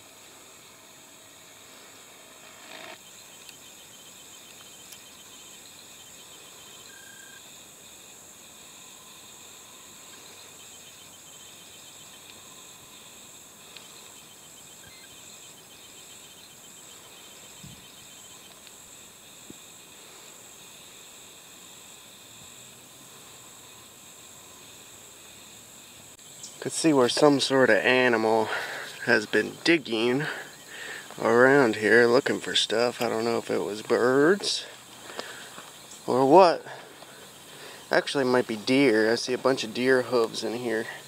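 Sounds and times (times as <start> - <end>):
insect chorus buzzing and chirping: 0.0 - 41.0
faint clicks: 4.4 - 5.1.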